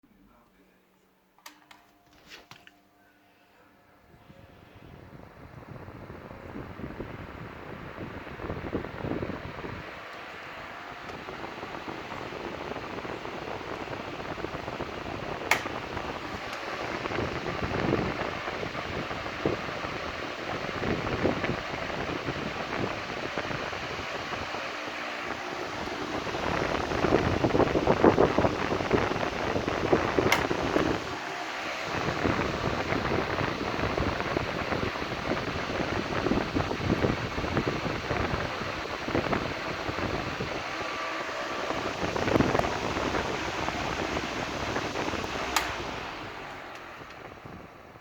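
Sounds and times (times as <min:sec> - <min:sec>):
electric fan running: 0:01.3 - 0:48.0
fan switch click: 0:01.4 - 0:01.9, 0:11.0 - 0:11.4, 0:14.7 - 0:17.3, 0:25.8 - 0:33.2, 0:41.7 - 0:47.4.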